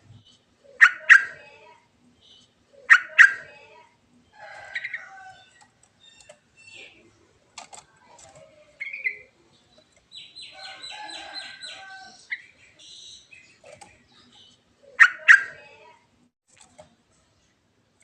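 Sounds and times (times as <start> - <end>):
bulbul singing: 2.2 - 3.5, 8.8 - 15.6.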